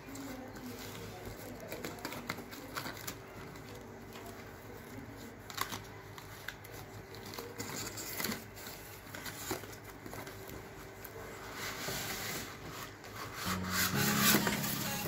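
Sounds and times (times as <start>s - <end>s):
packaging clicks and rustles: 0.0s - 11.5s.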